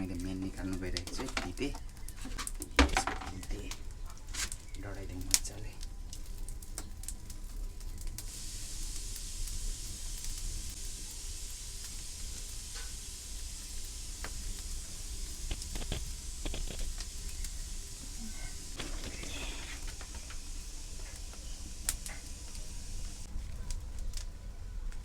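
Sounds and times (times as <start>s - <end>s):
fire hissing and crackling: 0.0s - 25.0s.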